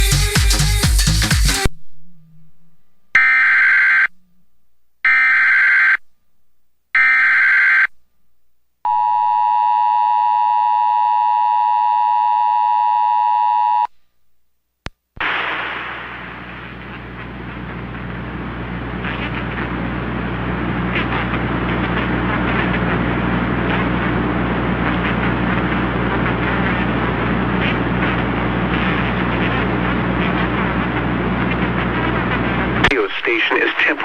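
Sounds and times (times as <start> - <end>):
steady hiss with low hum: 15.2 - 34.0.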